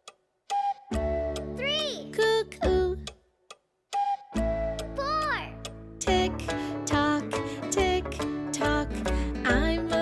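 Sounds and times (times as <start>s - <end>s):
clock-like ticks: 0.0s - 10.0s
children's song backing music: 1.4s - 3.1s, 4.8s - 10.0s.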